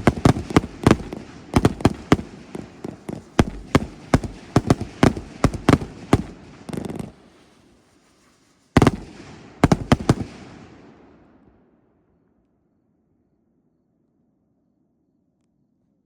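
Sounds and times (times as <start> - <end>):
fireworks banging: 0.0 - 7.8, 8.8 - 10.5.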